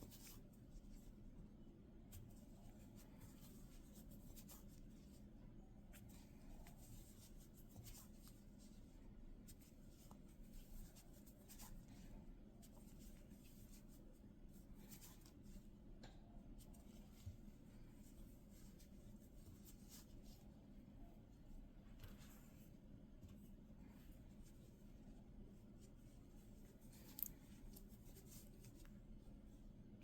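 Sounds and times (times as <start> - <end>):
low room hum: 0.0 - 30.0.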